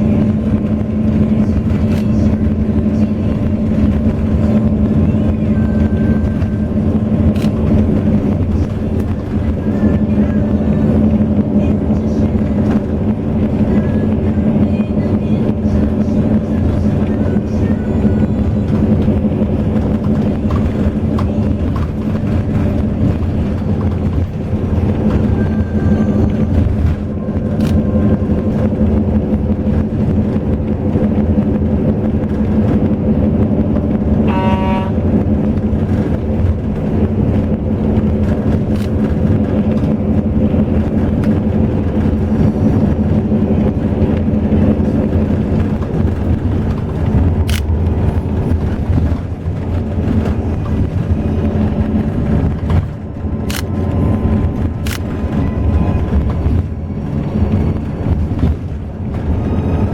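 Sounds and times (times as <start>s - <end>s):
bus engine and road drone: 0.0s - 59.9s
sharp clicks: 51.9s - 54.0s, 54.6s - 55.5s.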